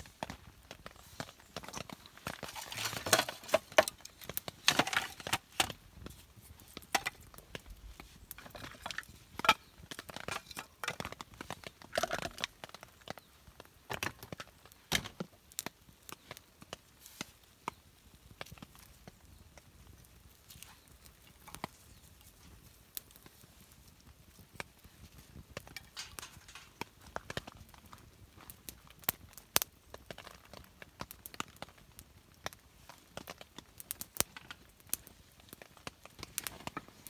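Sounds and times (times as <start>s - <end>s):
crinkling: 0.0s - 15.3s, 18.3s - 29.2s
sharp cracks and knocks: 13.9s - 16.8s, 25.6s - 27.8s.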